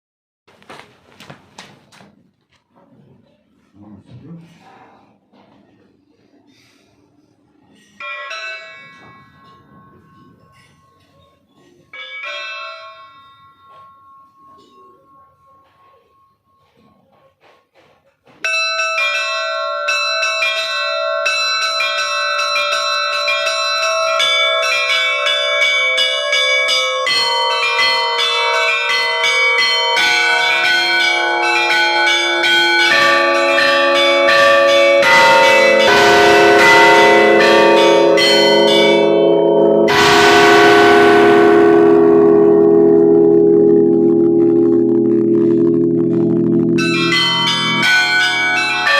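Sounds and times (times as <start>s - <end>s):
small church bells ringing: 7.7s - 17.2s, 18.3s - 48.9s
deeper church bells: 7.8s - 17.2s, 18.4s - 48.9s
large bell heavy strike: 22.5s - 48.9s.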